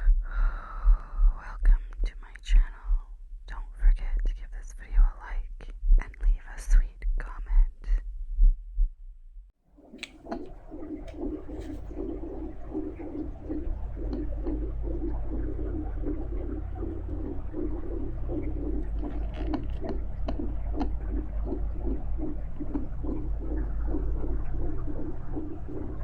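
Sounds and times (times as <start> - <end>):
deep underwater rumble: 9.8 - 26.0
fetal heartbeat pulse: 9.8 - 26.0.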